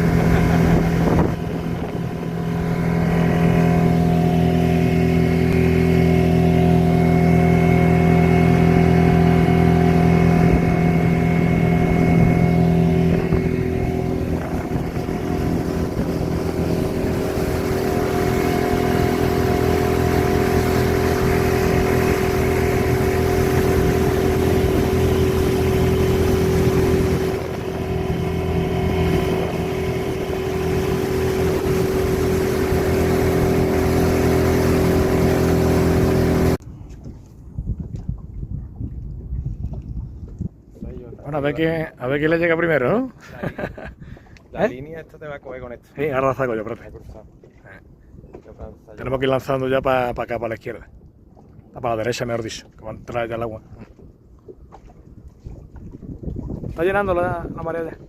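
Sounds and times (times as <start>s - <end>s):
engine running: 0.0s - 36.6s.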